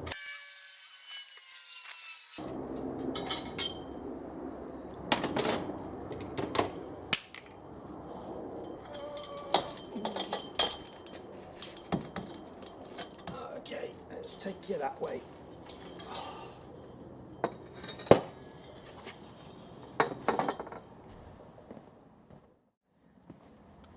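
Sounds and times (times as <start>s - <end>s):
spanner clinking on metal: 8.8s - 13.4s.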